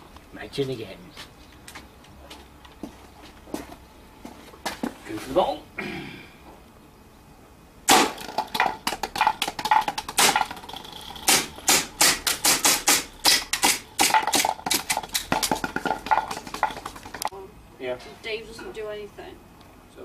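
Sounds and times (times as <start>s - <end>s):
bb gun shots: 7.9s - 10.6s, 11.2s - 14.6s.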